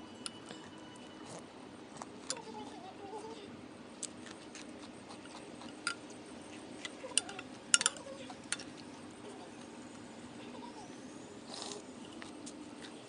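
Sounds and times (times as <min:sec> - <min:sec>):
cutlery clinking against a dish: 0:05.2 - 0:06.0, 0:07.0 - 0:08.7.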